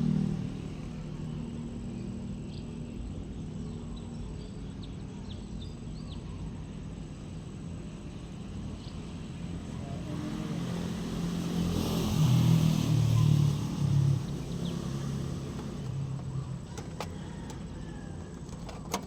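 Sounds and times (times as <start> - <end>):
excavator diesel engine revving: 10.0 - 19.0.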